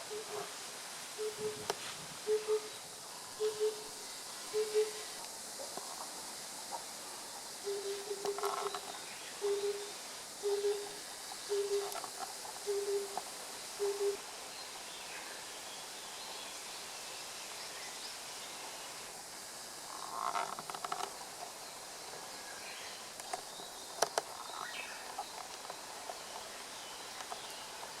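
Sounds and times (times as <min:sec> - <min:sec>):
bird calls: 0:01.2 - 0:01.7, 0:03.4 - 0:05.2, 0:07.7 - 0:12.1, 0:12.7 - 0:13.2.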